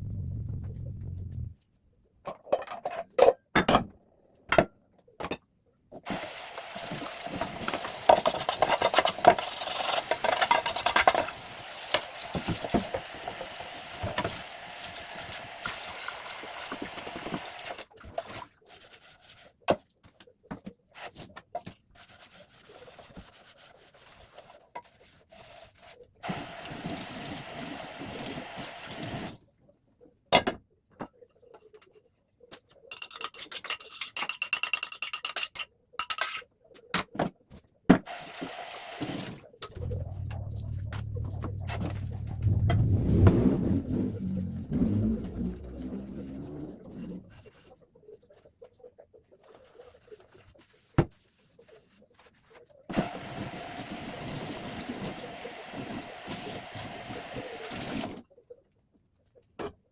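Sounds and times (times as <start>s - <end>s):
hand scrubbing a surface: 39.7s - 47.7s.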